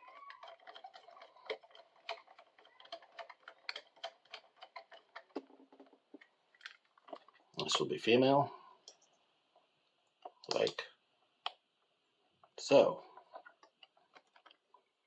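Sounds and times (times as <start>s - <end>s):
small metal clicks and taps: 0.0s - 7.7s.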